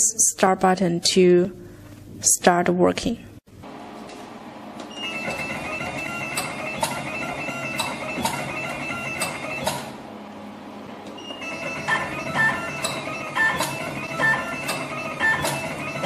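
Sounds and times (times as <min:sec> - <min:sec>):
machine motor whine: 0:03.6 - 0:16.0
sharp machine clicks: 0:05.0 - 0:10.0, 0:11.3 - 0:16.0.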